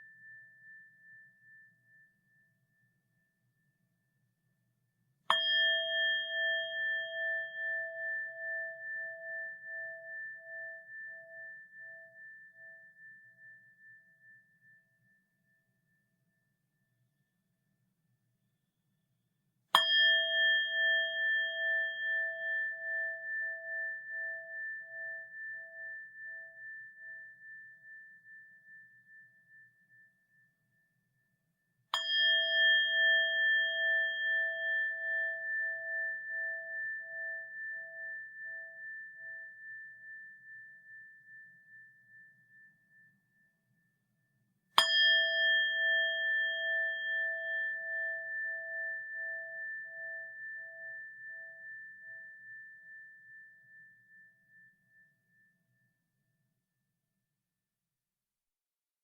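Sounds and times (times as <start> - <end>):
metal bowl bell ringing: 5.3 - 12.5, 19.8 - 27.3, 32.0 - 41.4, 44.8 - 54.1.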